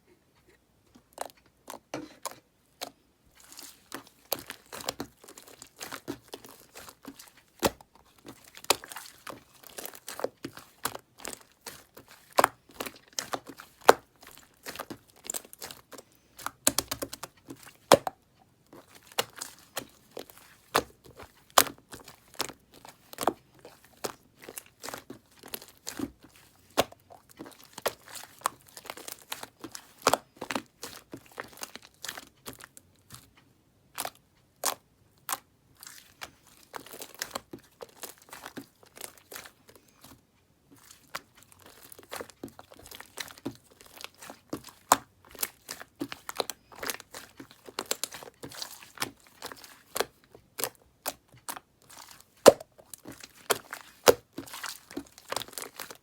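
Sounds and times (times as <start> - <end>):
bubble layer crackling: 3.4 - 18.1, 40.8 - 56.0.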